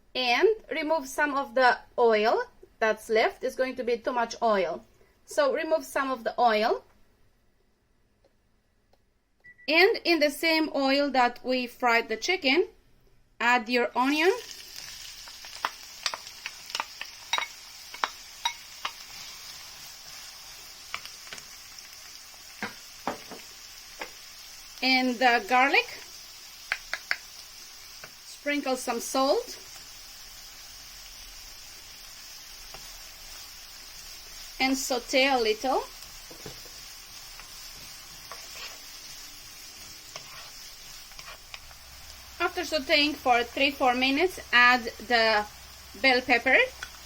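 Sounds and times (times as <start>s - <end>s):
onion sizzling in hot oil: 14.0s - 47.0s
oil popping and crackling: 14.5s - 19.2s, 26.7s - 27.2s.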